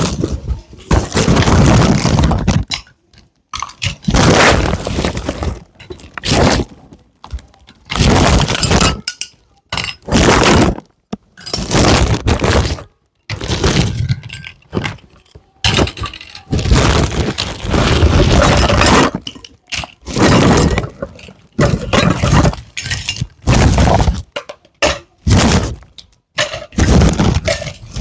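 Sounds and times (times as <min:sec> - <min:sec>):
plastic packaging crinkling: 0:10.0 - 0:19.4.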